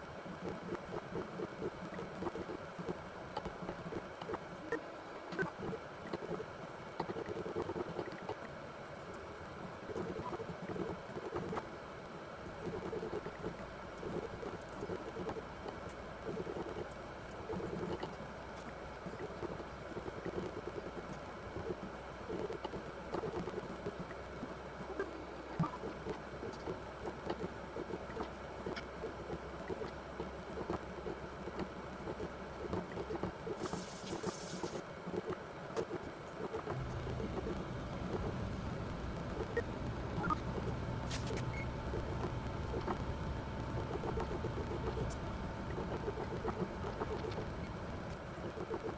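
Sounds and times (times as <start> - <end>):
brief hiss: 33.6 - 34.8
machine motor low hum: 36.6 - 48.9
higher motor hum: 36.7 - 48.2.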